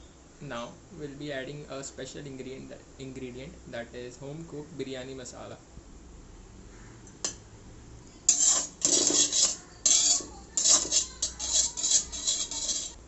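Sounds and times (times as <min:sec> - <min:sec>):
utensil scraping rice in a pan: 0:08.3 - 0:13.0.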